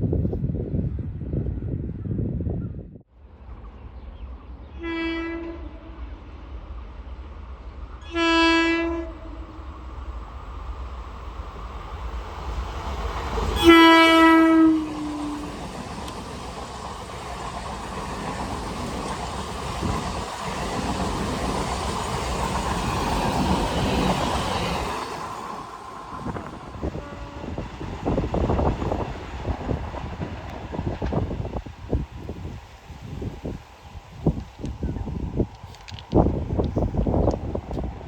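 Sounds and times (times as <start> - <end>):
train horn blast: 4.7 - 6.4, 8.0 - 9.6, 13.6 - 15.6, 26.8 - 27.7.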